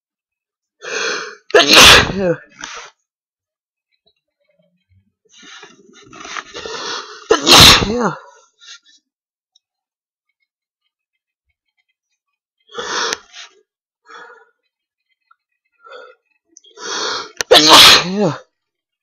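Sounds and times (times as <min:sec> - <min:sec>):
in-breath: 0:00.8 - 0:01.5, 0:06.6 - 0:07.3, 0:12.7 - 0:14.6, 0:15.8 - 0:17.4
man sneezing loudly: 0:01.5 - 0:02.4, 0:07.2 - 0:08.2, 0:16.9 - 0:18.4.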